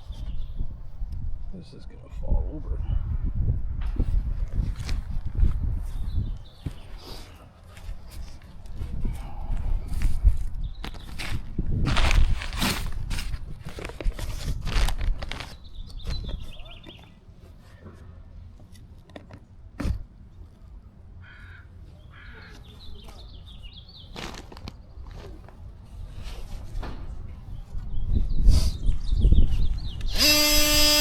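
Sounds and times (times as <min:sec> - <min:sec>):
birds calling: 0:05.9 - 0:07.7, 0:15.4 - 0:17.2, 0:21.2 - 0:24.9
scraping and rustling handling noise: 0:09.9 - 0:20.7, 0:22.4 - 0:27.6.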